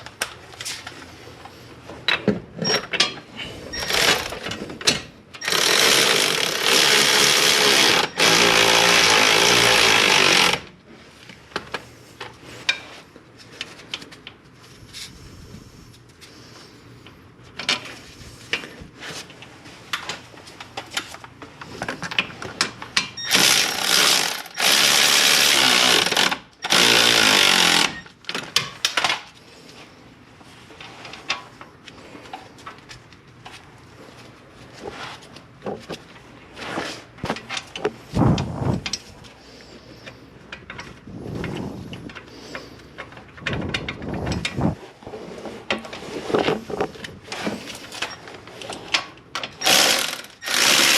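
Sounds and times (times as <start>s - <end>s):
impact wrench hammering: 5.4s - 10.7s, 49.6s - 50.9s
metallic clicks and clanks of tools: 46.4s - 50.9s.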